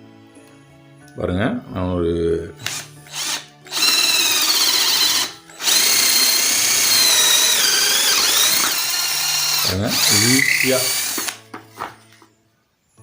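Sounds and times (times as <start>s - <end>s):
cordless drill motor whining: 2.6s - 11.4s.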